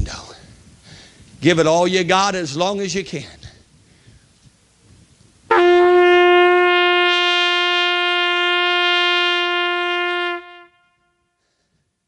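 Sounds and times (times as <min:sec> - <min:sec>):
ram's horn long blast: 0:05.5 - 0:11.4.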